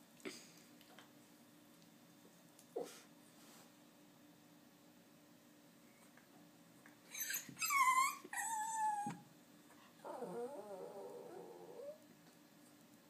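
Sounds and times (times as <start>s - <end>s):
dog whining: 7.1s - 9.2s, 10.0s - 12.0s.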